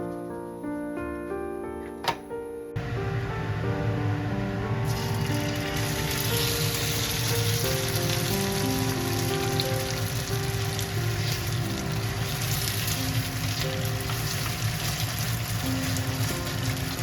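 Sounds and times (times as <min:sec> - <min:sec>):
background music: 0:00.0 - 0:17.0
chicken sizzling in oil: 0:04.7 - 0:17.0.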